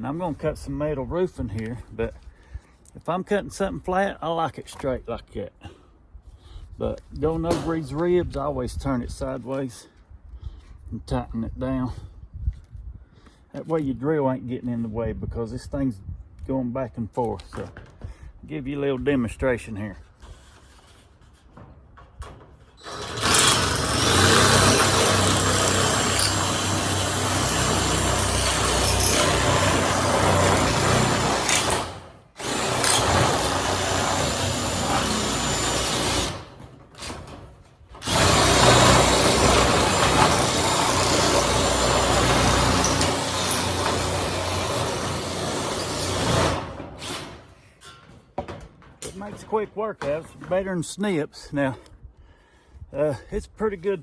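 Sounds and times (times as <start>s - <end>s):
drill shear cutting metal roofing: 22.3s - 48.2s.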